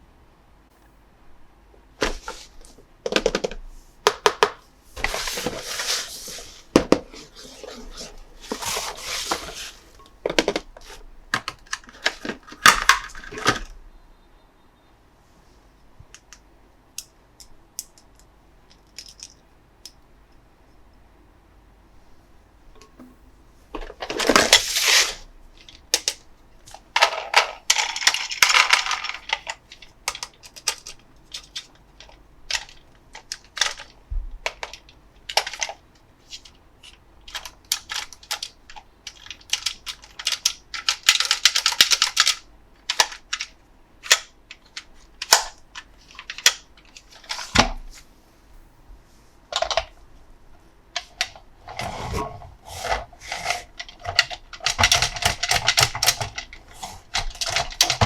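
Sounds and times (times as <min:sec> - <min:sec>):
rustling and scraping: 0:02.0 - 0:04.0, 0:04.6 - 0:13.7, 0:22.1 - 0:34.8, 0:51.0 - 0:58.0
plastic toy parts clicking: 0:17.0 - 0:20.0, 0:24.2 - 0:47.7, 0:52.8 - 0:58.0.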